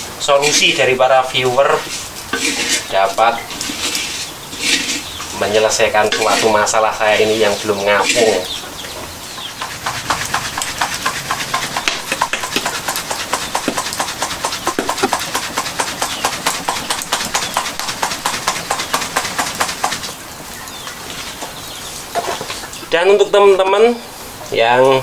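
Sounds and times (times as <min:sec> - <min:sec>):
pellets rattling in a pan: 0:00.4 - 0:08.5.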